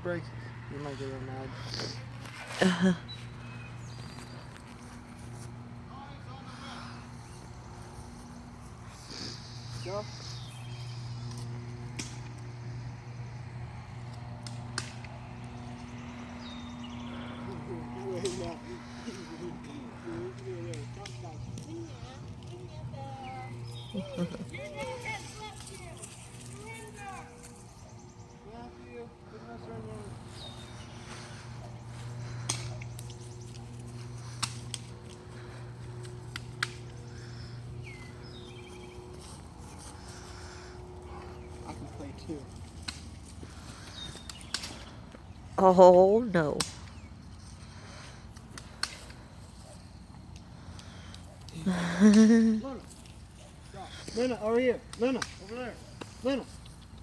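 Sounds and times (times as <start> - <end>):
steady low hum: 0.0 - 57.0
bird chirping: 3.0 - 5.0, 7.2 - 11.5, 20.8 - 29.0, 36.8 - 39.8.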